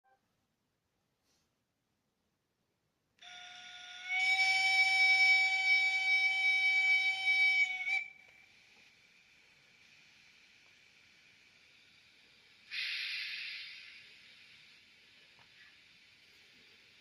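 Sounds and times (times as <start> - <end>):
model train steam whistle: 3.2 - 11.9, 12.6 - 15.0
faint steady hiss: 6.4 - 17.0.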